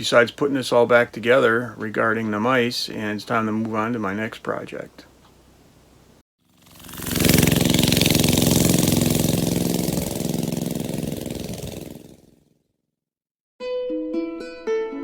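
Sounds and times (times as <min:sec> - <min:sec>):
engine running steadily: 0:06.6 - 0:12.4.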